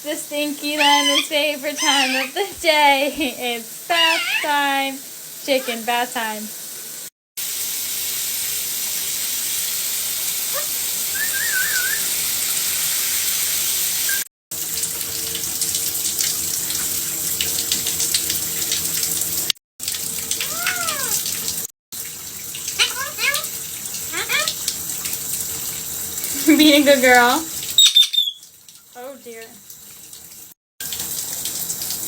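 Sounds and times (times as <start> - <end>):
shower water spraying: 0.0 - 32.0
rising and falling call: 0.8 - 2.4, 11.1 - 12.1
warbling bird chirp: 0.8 - 2.4, 11.1 - 12.1, 27.8 - 28.4.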